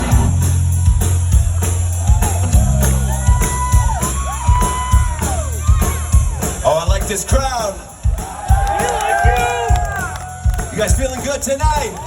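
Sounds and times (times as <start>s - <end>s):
crowd whooping and shouting: 0.0s - 6.8s, 7.6s - 12.0s
live rock band playing: 0.0s - 12.0s.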